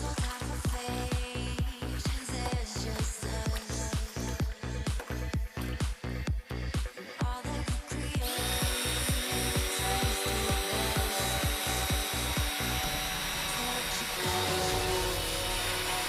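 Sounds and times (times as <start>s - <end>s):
dance music with kick drum: 0.0s - 16.0s
power tool motor whining: 8.2s - 16.0s.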